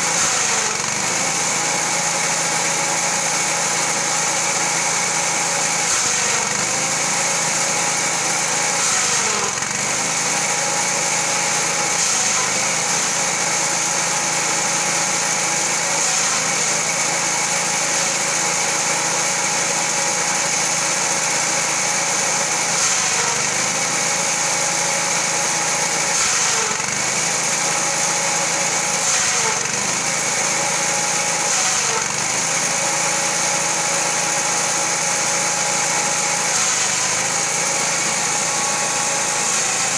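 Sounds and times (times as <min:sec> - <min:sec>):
forage chopper engine running: 0:00.0 - 0:39.9.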